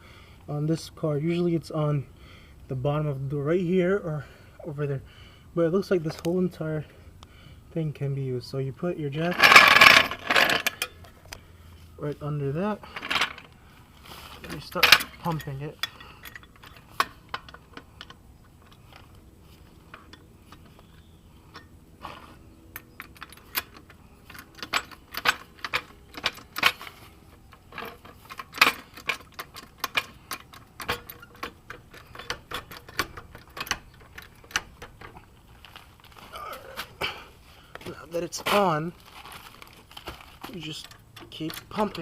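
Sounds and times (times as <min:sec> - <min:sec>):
car jack clicking and clinking: 0:14.7 - 0:19.0, 0:22.7 - 0:35.2, 0:40.7 - 0:42.0.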